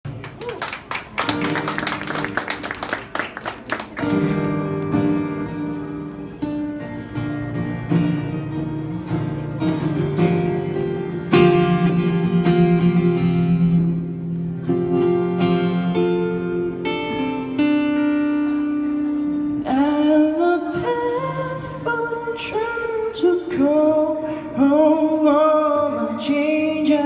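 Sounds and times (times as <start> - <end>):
acoustic guitar chords: 1.2 - 27.0
person singing: 19.6 - 27.0.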